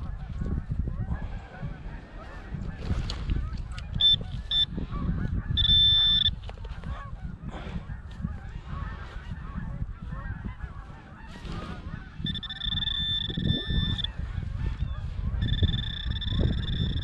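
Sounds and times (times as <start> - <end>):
low rumble of wind: 0.0 - 17.0
metal detector beeps: 4.0 - 4.7, 5.6 - 6.4, 12.2 - 14.1, 15.4 - 17.0.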